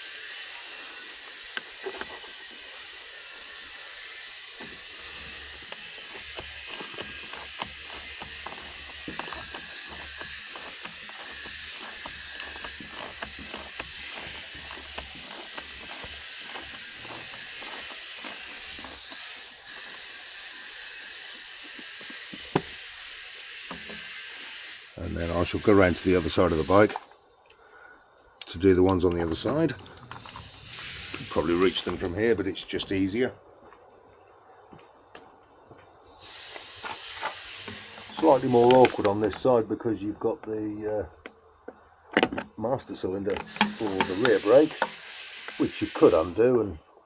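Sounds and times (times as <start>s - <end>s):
hand tool and screws clicking: 0.0s - 24.7s, 36.4s - 39.5s, 43.3s - 45.7s
steady hiss: 0.0s - 33.4s, 36.0s - 41.2s, 42.6s - 46.8s.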